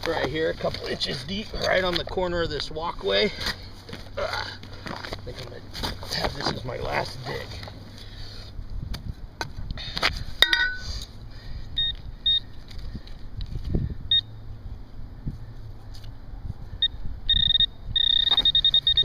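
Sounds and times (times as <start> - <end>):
metal detector probe beeping: 11.8 - 12.5, 14.1 - 14.3, 16.8 - 19.0.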